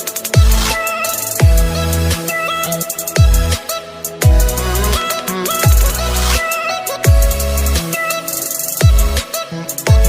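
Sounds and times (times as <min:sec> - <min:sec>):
deep bass drum hit: 0:04.2 - 0:04.6.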